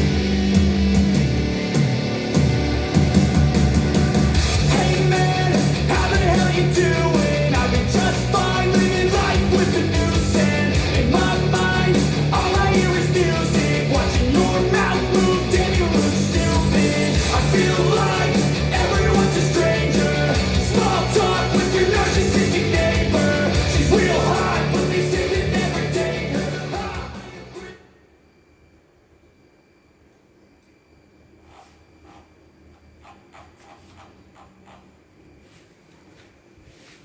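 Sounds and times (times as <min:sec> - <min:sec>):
rock music with singing: 0:00.0 - 0:27.9.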